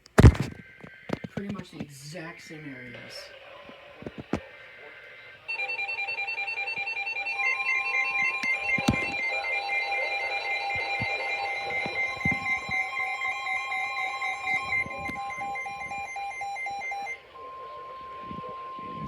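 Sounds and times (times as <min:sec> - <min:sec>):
steady warning alarm tone: 0:00.0 - 0:19.0
rapid pulsing electronic beeps: 0:00.2 - 0:19.0
lower alarm tone: 0:05.4 - 0:19.0.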